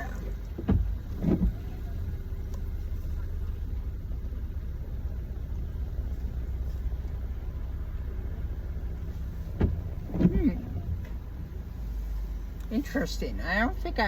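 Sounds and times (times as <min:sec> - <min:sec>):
car engine running: 0:00.0 - 0:14.0.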